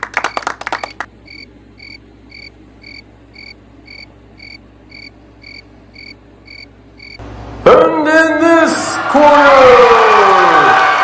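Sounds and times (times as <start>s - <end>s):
animal chirping: 1.3s - 7.2s.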